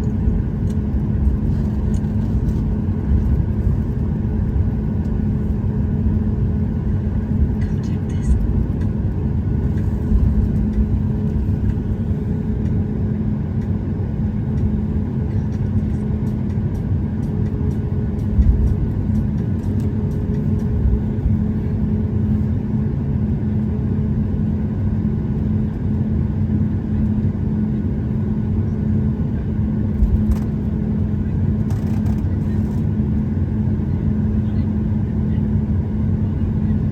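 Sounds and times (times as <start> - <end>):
airliner cabin jet engine rumble: 0.0 - 36.9
constant low hum: 0.0 - 36.9.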